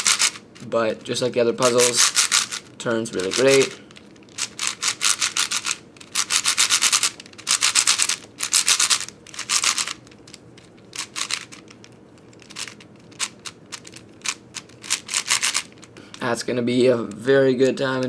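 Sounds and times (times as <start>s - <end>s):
plastic puzzle cube turning: 1.6s - 15.9s.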